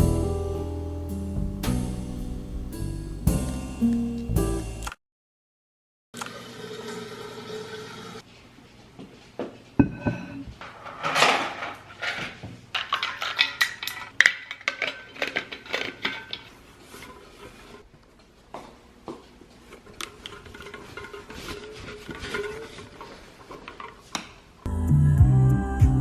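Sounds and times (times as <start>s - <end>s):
dishes and cutlery clinking: 9.8s - 17.5s.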